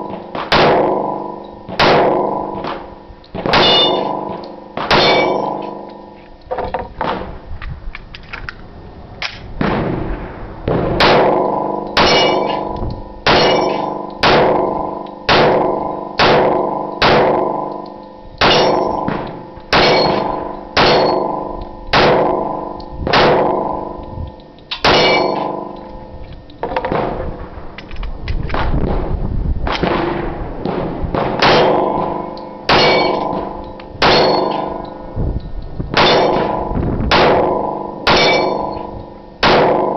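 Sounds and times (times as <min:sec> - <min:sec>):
pistol shots: 0:00.1 - 0:05.8, 0:10.7 - 0:17.7, 0:18.4 - 0:23.9, 0:24.8 - 0:25.7, 0:29.7 - 0:34.9, 0:35.9 - 0:39.9
steel target clanging: 0:03.5 - 0:05.9, 0:11.9 - 0:14.6, 0:18.4 - 0:22.4, 0:24.7 - 0:25.8, 0:31.4 - 0:35.0, 0:36.0 - 0:36.7, 0:38.0 - 0:38.9.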